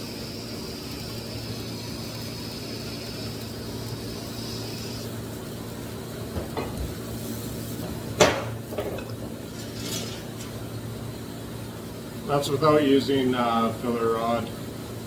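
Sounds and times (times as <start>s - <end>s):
welder low hum: 0.0s - 14.8s
welding arc whine: 0.0s - 15.0s
light knocks: 6.3s - 7.0s.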